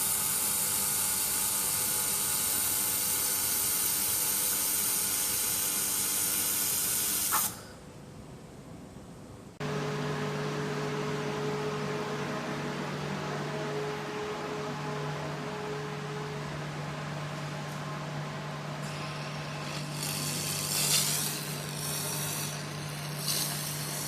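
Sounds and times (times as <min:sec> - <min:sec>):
laser welding machine hissing: 0:00.0 - 0:07.8, 0:18.8 - 0:24.0
steady low hum: 0:07.6 - 0:24.0.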